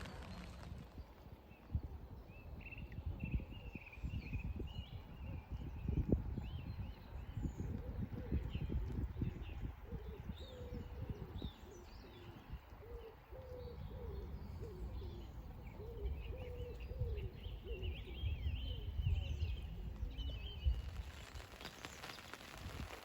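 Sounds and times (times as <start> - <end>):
bird cooing: 9.8 - 19.3.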